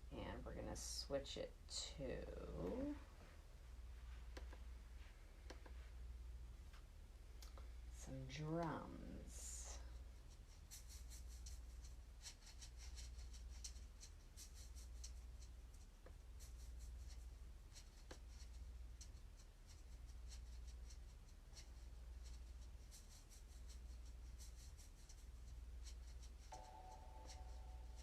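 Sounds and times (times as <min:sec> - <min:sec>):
faint low hum: 0:00.0 - 0:28.0
soft scratchy clicks: 0:05.4 - 0:05.8.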